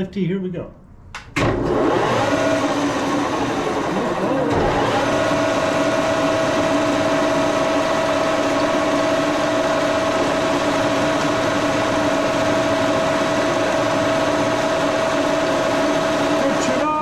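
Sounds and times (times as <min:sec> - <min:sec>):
milling machine high whine: 0:01.6 - 0:17.0.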